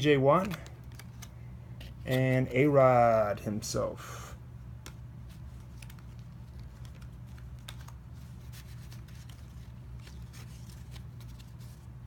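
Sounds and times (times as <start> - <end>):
steady low hum: 0.0 - 12.0
trading cards and packaging handled: 0.3 - 2.6, 4.8 - 12.0.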